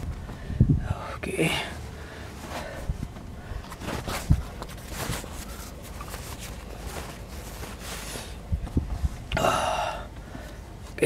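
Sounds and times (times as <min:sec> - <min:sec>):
steady low rumble: 0:00.0 - 0:11.0
light rustling: 0:02.2 - 0:09.3.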